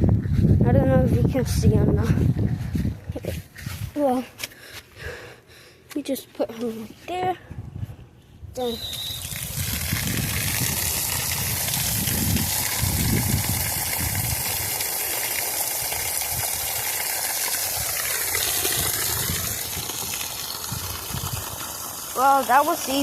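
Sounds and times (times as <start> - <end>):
water rushing: 8.6 - 23.0.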